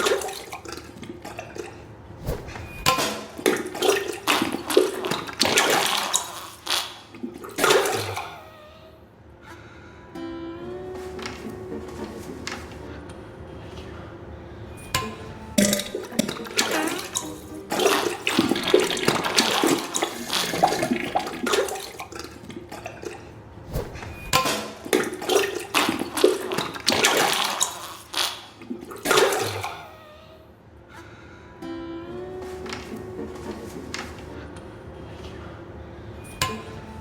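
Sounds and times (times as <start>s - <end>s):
wet splattering and gushing: 0.0s - 8.3s, 15.8s - 23.2s, 24.8s - 29.7s.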